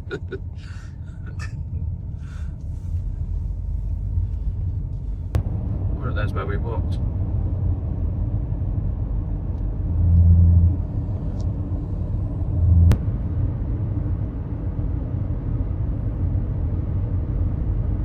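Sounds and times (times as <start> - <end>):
car road noise rumble: 0.0 - 18.0
brief low hums: 9.5 - 14.0.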